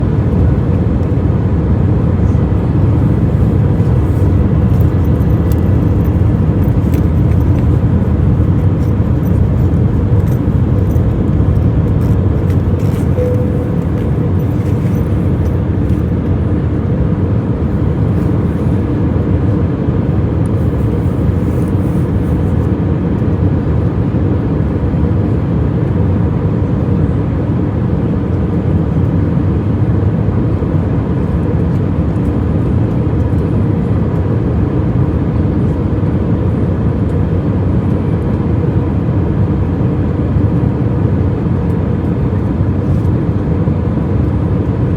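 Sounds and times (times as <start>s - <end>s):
faint steady hums: 0.0s - 27.2s
airplane cabin rumble: 0.0s - 44.9s.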